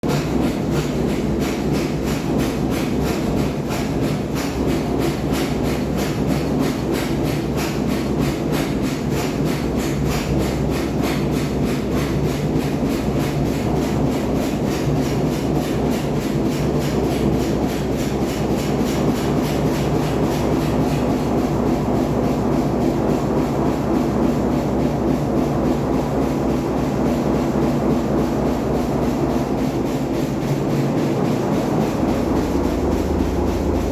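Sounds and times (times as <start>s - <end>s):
drum rubbing and knocking: 0.0s - 33.9s
washing machine drone: 0.0s - 33.9s.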